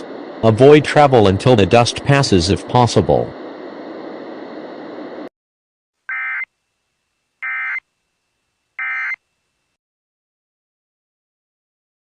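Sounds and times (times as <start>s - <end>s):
steady broadcast hiss: 0.0s - 5.3s, 6.0s - 9.8s
warbling two-tone digital data bursts: 7.4s - 7.8s, 8.8s - 9.2s.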